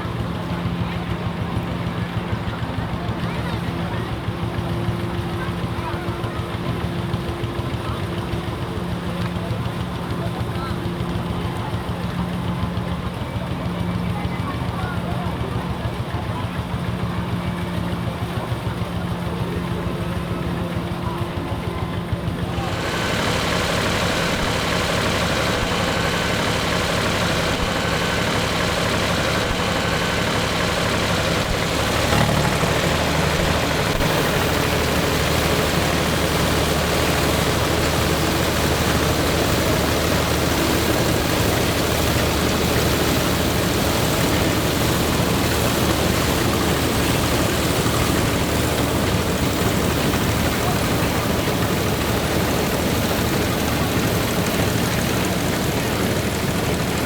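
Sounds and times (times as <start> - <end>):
diesel tractor engine running: 0.0 - 57.0
threshing machinery clattering: 22.5 - 57.0.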